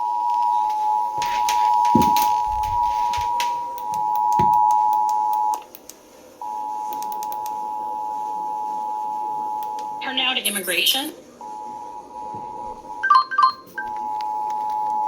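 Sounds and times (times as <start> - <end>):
two-tone alert alarm: 0.5 - 5.6.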